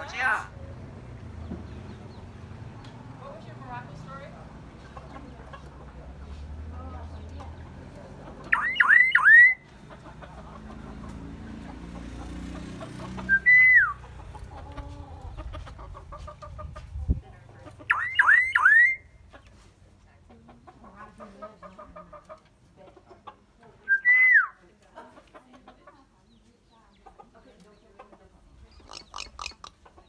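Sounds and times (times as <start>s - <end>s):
bird whistling loudly: 8.5s - 9.6s, 17.9s - 19.0s, 28.8s - 29.7s.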